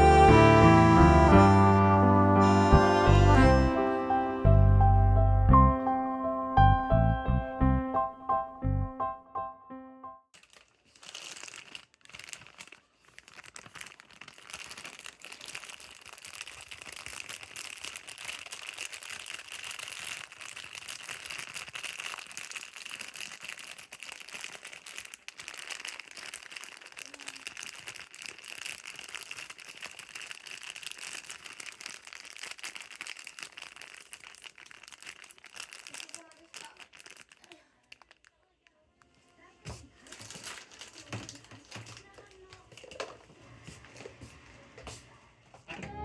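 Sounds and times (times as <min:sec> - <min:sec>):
crinkling and rustling: 0:10.3 - 0:46.0.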